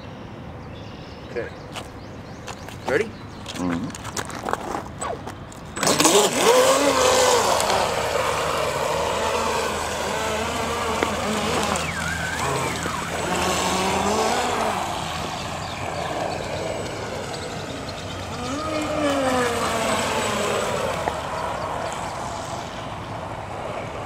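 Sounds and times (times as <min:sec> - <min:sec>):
water rushing: 0:05.8 - 0:17.5
motorboat engine running hard: 0:05.8 - 0:22.4.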